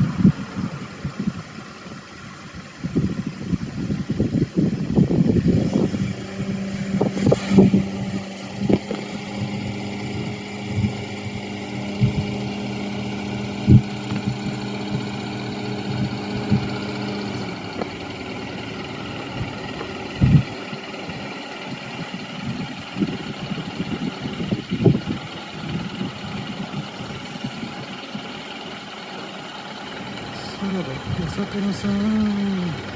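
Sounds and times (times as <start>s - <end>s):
engine idling: 0.0s - 32.9s.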